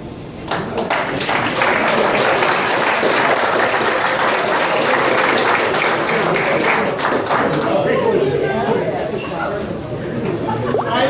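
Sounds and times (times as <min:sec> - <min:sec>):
crowd applauding: 0:00.4 - 0:08.1.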